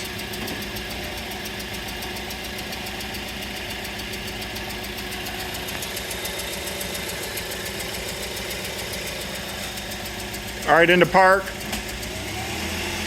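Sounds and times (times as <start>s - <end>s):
fast even ticking: 0.0s - 12.1s
car engine idling: 0.0s - 13.0s.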